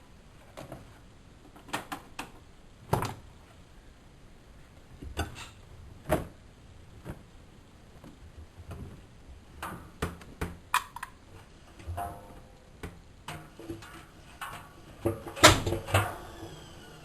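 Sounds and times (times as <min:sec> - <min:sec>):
washing machine clicks and knocks: 0:11.9 - 0:16.4.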